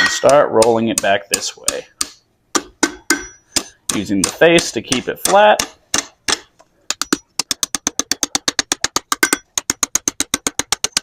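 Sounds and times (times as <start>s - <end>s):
hammer striking iron on anvil: 0.0s - 1.5s, 2.1s - 5.5s.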